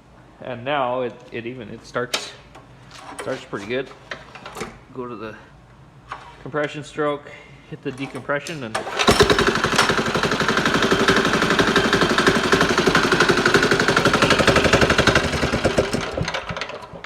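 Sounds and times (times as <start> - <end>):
diesel engine clattering: 9.0 - 17.0.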